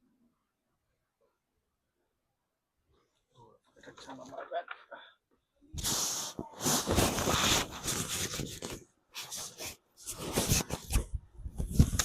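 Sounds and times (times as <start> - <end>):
fabric rubbing on microphone: 5.7 - 12.0.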